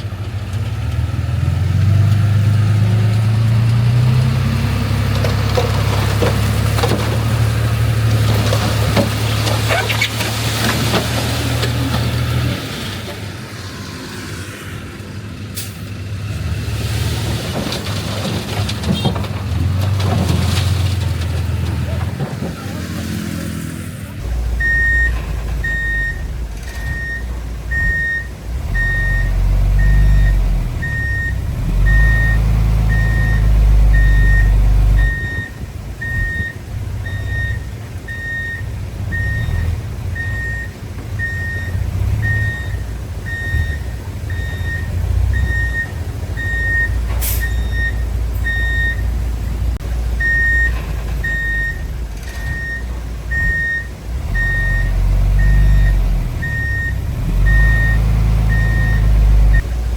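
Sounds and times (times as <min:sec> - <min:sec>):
diesel engines rumbling: 0:00.0 - 0:59.9
reversing alarm beeping: 0:24.6 - 0:49.1, 0:50.2 - 0:59.7.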